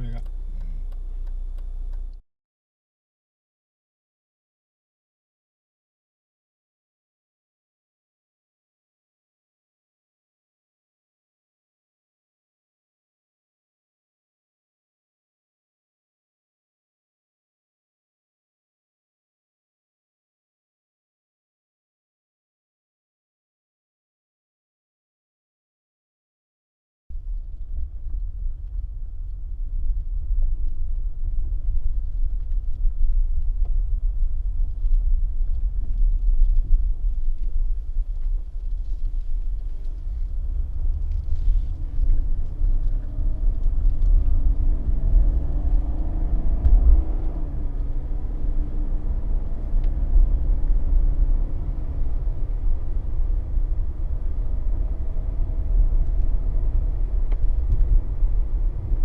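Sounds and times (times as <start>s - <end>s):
car engine accelerating: 0.0s - 2.2s, 27.7s - 59.0s
car road and drivetrain rumble: 0.0s - 2.2s, 27.1s - 59.0s.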